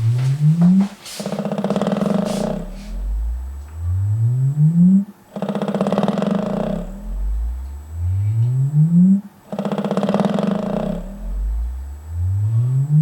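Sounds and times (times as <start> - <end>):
subwoofer bass tone rising: 0.0 - 0.9, 2.0 - 5.1, 6.5 - 9.3, 10.6 - 13.0.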